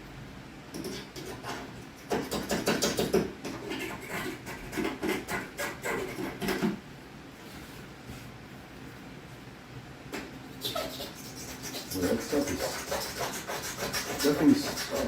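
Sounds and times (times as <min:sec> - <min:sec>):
tool scraping caulk: 0:10.7 - 0:15.0.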